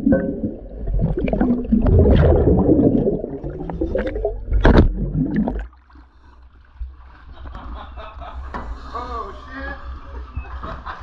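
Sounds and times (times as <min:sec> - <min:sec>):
water gurgling and bubbling: 0:00.0 - 0:05.9.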